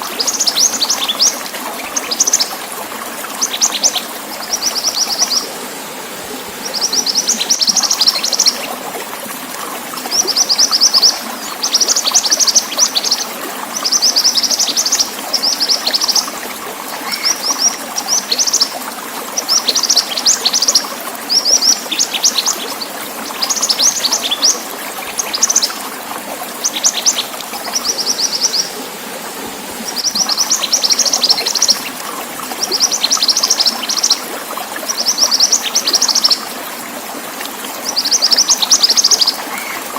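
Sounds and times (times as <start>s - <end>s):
running water trickling: 0.0s - 39.9s
bird chirping: 6.6s - 8.7s, 26.6s - 28.8s, 29.9s - 31.9s.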